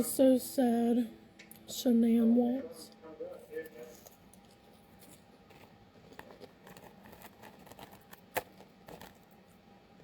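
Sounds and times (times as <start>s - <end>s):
chewing crispy food: 3.6s - 9.5s.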